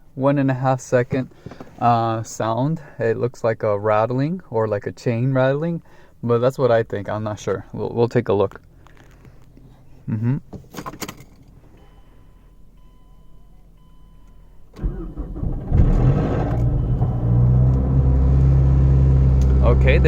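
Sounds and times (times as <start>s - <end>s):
faint beeping: 11.8s - 14.8s
car engine cranking and idling: 13.7s - 20.0s
engine rattle at start-up: 14.8s - 19.8s.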